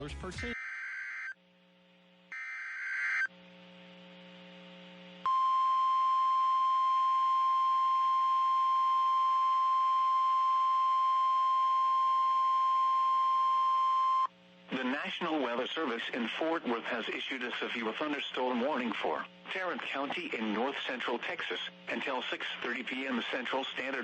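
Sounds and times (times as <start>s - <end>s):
steady warning alarm tone: 0.5s - 1.4s, 2.3s - 3.3s, 5.3s - 14.3s
faint radio hiss: 14.4s - 24.0s.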